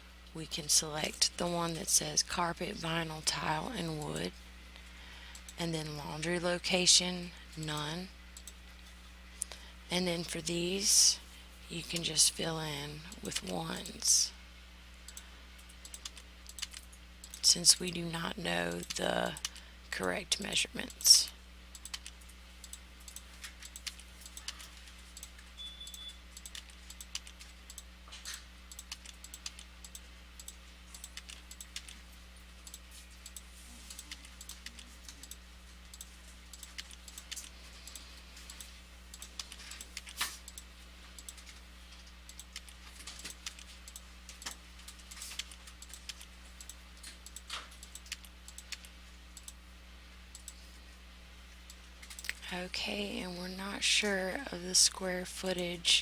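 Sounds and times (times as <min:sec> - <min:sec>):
low electrical hum: 0:00.0 - 0:56.0
computer keyboard typing: 0:15.1 - 0:17.9, 0:21.7 - 0:49.6.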